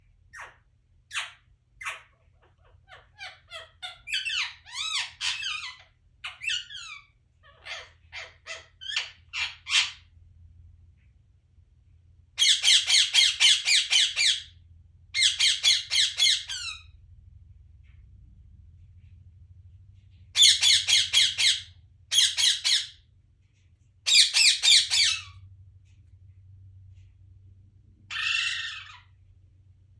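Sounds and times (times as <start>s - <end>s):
parrot chattering calls: 0.3s - 10.1s, 12.4s - 14.6s, 15.2s - 16.9s, 20.4s - 23.0s, 24.1s - 25.4s, 28.1s - 29.2s
parrot chirping: 0.3s - 10.1s, 12.4s - 14.6s, 15.2s - 17.0s, 20.3s - 23.1s, 24.0s - 25.4s, 28.1s - 29.2s.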